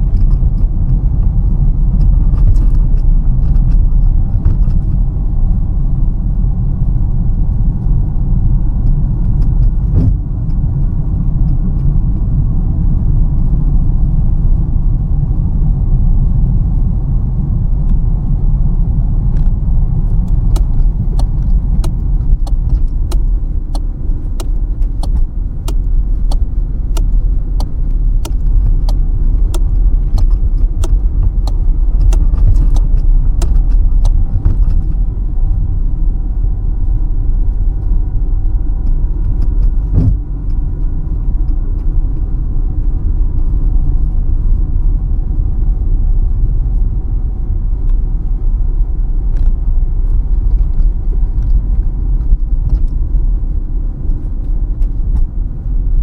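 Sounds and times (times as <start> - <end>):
engine and road noise: 0.0 - 56.0
sharp ticks: 19.4 - 34.2.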